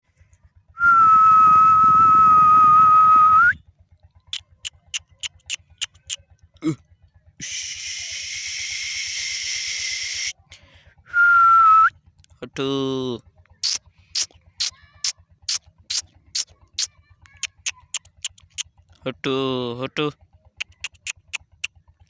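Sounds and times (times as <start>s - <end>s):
steady whistle: 0.8s - 3.6s, 7.4s - 10.4s, 11.1s - 12.0s
sharp clicks: 4.3s - 6.2s, 17.2s - 18.6s, 20.6s - 21.8s
hiss: 7.4s - 10.4s.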